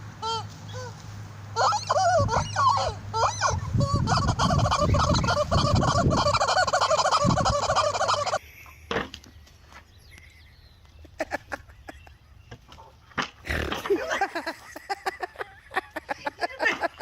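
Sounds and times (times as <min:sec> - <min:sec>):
poultry warbling calls: 0:01.6 - 0:08.4.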